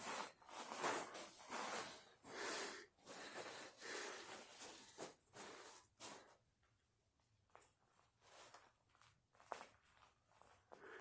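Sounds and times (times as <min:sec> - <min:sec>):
person breathing hard: 0:00.0 - 0:06.3, 0:10.7 - 0:11.0.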